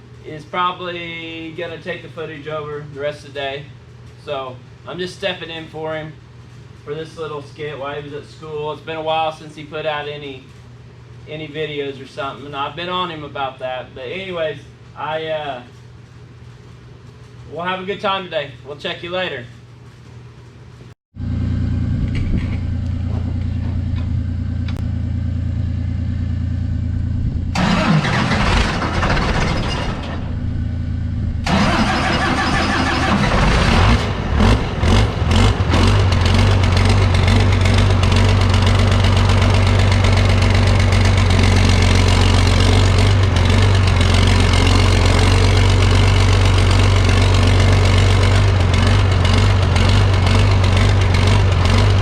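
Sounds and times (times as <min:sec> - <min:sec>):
large engine running: 0:21.2 - 0:52.0.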